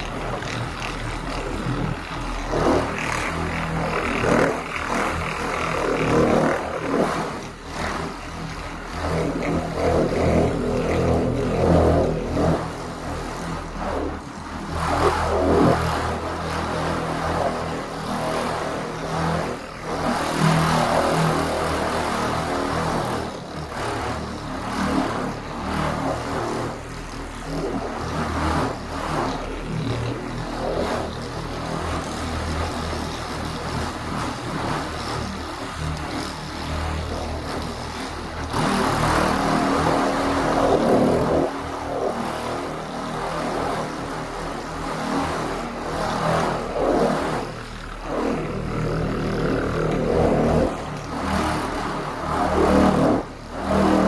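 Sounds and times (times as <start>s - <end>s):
electric car polisher running: 0.0s - 14.0s
electric polisher running: 0.0s - 54.0s.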